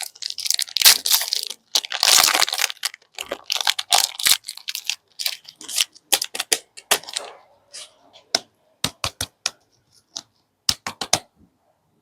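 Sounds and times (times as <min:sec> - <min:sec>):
plastic wrappers crinkling and tearing: 0:00.0 - 0:08.0.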